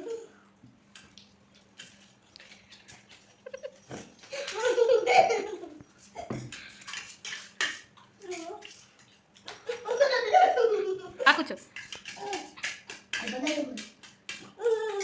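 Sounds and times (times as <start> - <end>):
giggling: 3.4 - 6.3.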